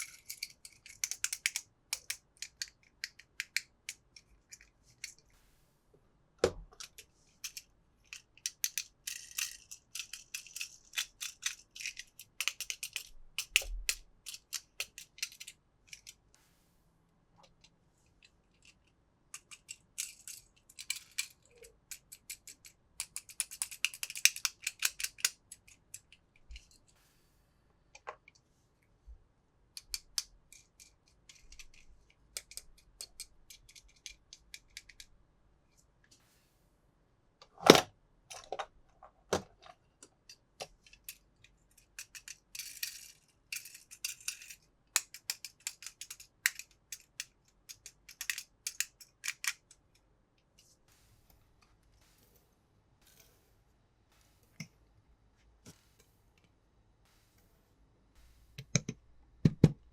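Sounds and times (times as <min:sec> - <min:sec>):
knock: 0:58.6 - 0:59.8
plastic clicks and taps: 0:58.6 - 0:59.8.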